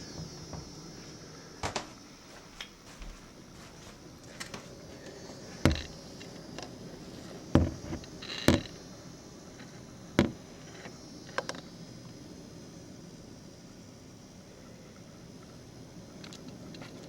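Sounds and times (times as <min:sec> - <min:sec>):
faint steady hiss: 0:00.0 - 0:17.0
sharp knocks: 0:05.6 - 0:06.0, 0:07.6 - 0:08.8, 0:10.2 - 0:10.4.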